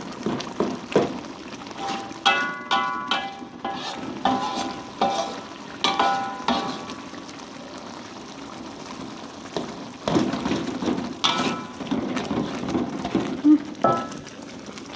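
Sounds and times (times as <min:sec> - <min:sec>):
paste sizzling in a pan: 0:00.0 - 0:14.9
spatula scraping pan: 0:00.2 - 0:07.4, 0:09.5 - 0:14.4
metal spatula clanking on pan: 0:01.7 - 0:07.2, 0:09.6 - 0:14.3.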